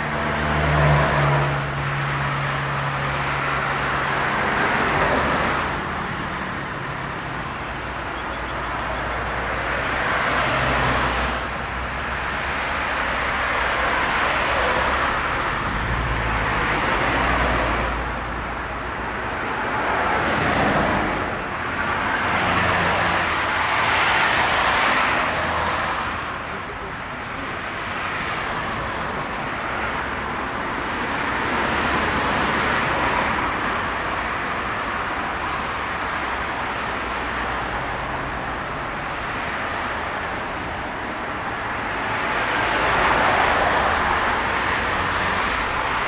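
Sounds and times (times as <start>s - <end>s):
cars passing: 0.0s - 46.0s.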